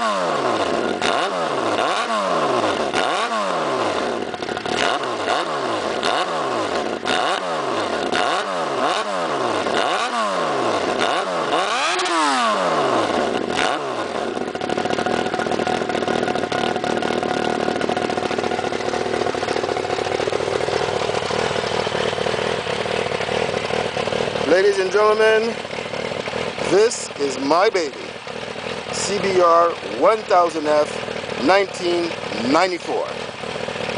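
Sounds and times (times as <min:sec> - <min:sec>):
motorcycle engine idling: 0:00.0 - 0:33.9
motorcycle engine revving: 0:00.0 - 0:33.9.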